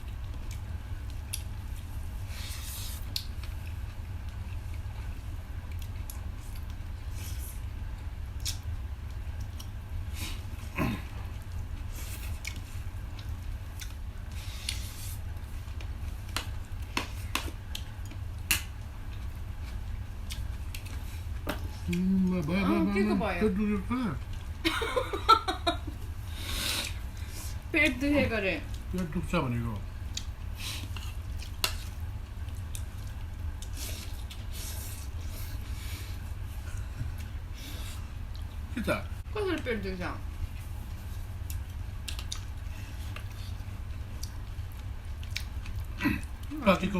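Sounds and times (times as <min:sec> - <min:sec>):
wet chewing of food: 0:00.0 - 0:22.4, 0:30.0 - 0:38.7, 0:40.4 - 0:46.6
steady low hum: 0:00.0 - 0:46.9
wet chewing: 0:08.3 - 0:09.8, 0:30.1 - 0:35.3, 0:40.6 - 0:46.5.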